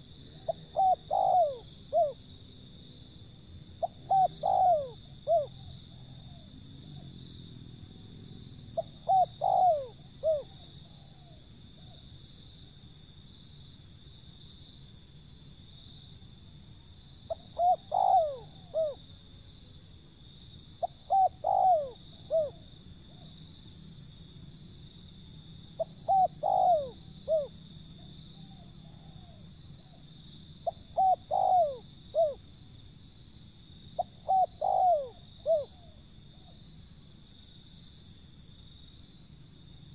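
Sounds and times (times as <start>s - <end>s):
dove cooing: 0.0s - 2.2s, 3.8s - 7.1s, 8.6s - 12.0s, 17.3s - 19.0s, 20.8s - 23.3s, 25.8s - 30.0s, 30.6s - 32.4s, 34.0s - 36.6s.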